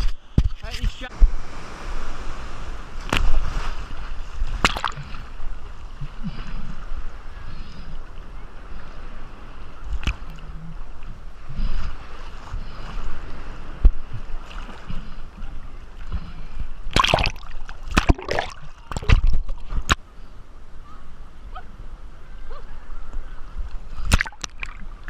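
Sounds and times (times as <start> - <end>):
seawater sloshing and gurgling: 2.1 - 7.9, 9.9 - 20.0, 23.8 - 25.0
sharp splashes and knocks: 3.0 - 5.2, 16.9 - 20.0, 24.0 - 24.9.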